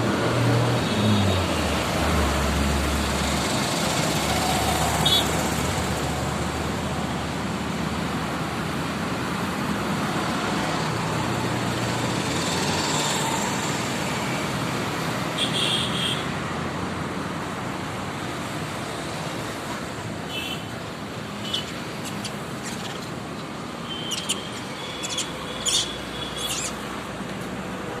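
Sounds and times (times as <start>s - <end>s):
road traffic noise: 0.0s - 28.0s
high-pitched chirps: 23.8s - 26.8s.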